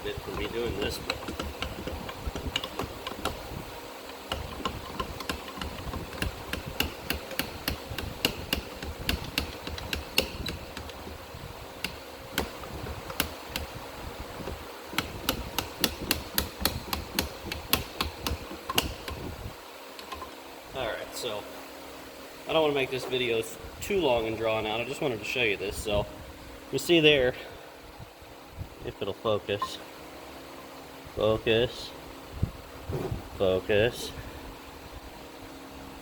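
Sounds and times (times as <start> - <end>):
metallic clicks and knocks: 0.3 - 3.4, 4.1 - 11.0.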